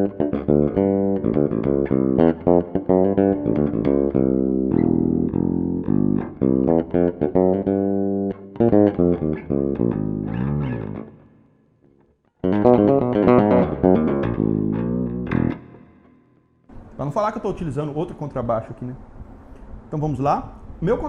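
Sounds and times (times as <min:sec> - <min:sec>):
electric bass plucked notes: 0:00.0 - 0:11.4, 0:12.4 - 0:16.1.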